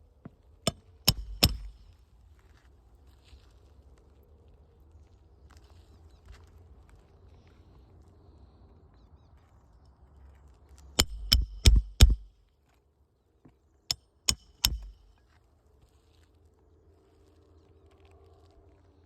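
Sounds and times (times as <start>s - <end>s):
hammer striking metal: 0.7s - 1.8s, 11.0s - 12.3s, 14.3s - 15.1s.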